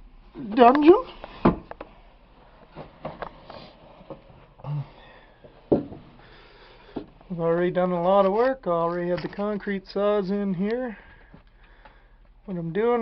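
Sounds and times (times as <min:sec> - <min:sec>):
knocks and shuffles of climbing: 0:00.4 - 0:09.6.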